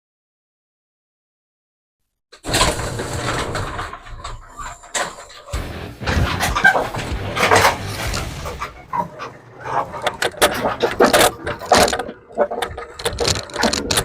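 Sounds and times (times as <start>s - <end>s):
mower wheels clattering and knocking: 2.4s - 14.0s.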